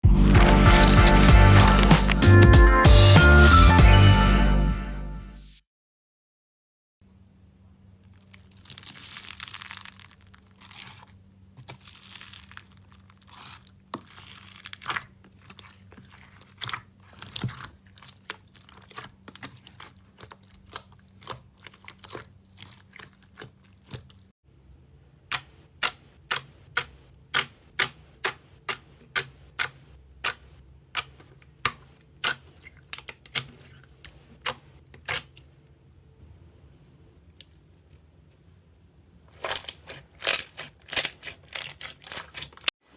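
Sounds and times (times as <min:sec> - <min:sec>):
slime crackling: 0:00.2 - 0:02.4, 0:08.0 - 0:24.3, 0:25.3 - 0:35.5, 0:39.4 - 0:42.7
slime popping: 0:00.3 - 0:02.3.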